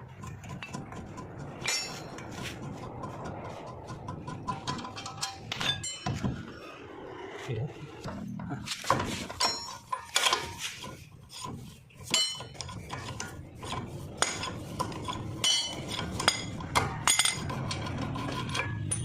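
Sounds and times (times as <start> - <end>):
metal tools clinking and scraping: 1.6 - 3.0, 4.3 - 6.4, 8.2 - 19.0.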